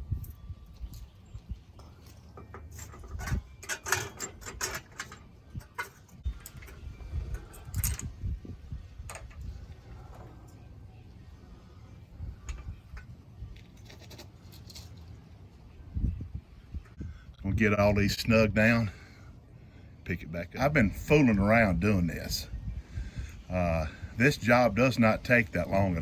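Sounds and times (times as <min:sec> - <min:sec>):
metal parts and tools clinking: 0:00.2 - 0:08.3, 0:08.9 - 0:10.6, 0:12.4 - 0:15.3.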